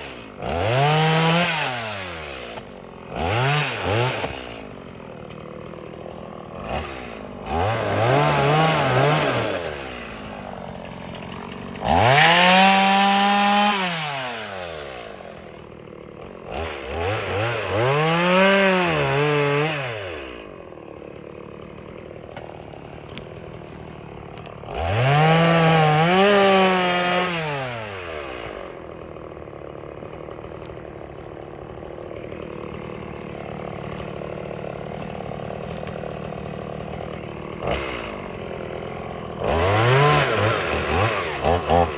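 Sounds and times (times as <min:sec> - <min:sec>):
chainsaw revving and idling: 0:00.0 - 0:41.9.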